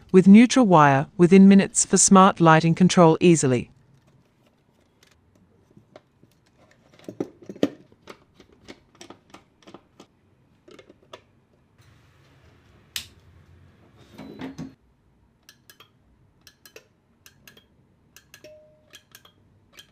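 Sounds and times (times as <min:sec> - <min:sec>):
small parts clicking and tapping: 0:15.4 - 0:19.9.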